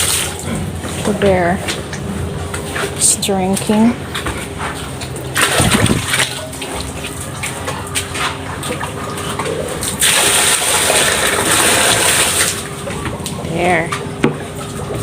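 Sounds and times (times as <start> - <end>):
water running into a barrel: 0.0 - 0.4, 5.0 - 12.9.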